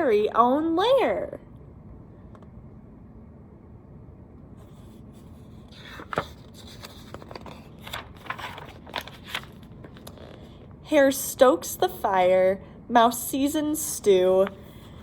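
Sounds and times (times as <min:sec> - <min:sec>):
low room hum: 0:00.0 - 0:15.0
book pages rustling: 0:04.6 - 0:10.6.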